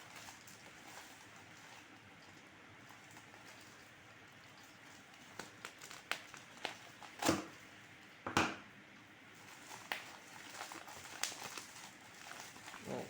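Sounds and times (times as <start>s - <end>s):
packaging crinkling: 0.0s - 7.6s, 9.3s - 13.0s
packaging ripping: 5.2s - 7.5s, 9.4s - 13.0s.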